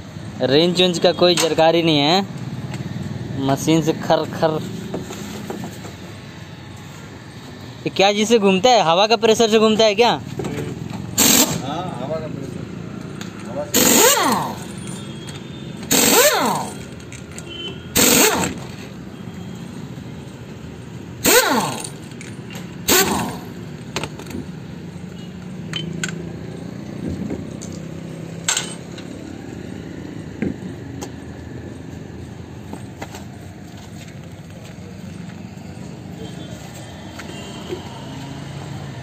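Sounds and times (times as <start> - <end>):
pneumatic impact wrench bursts: 10.9 - 11.8, 13.6 - 19.0, 21.2 - 24.2.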